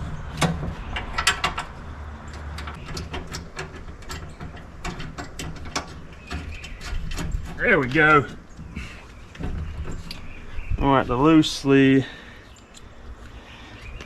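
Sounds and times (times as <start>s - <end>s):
metallic clicks and knocks: 0.0s - 8.7s.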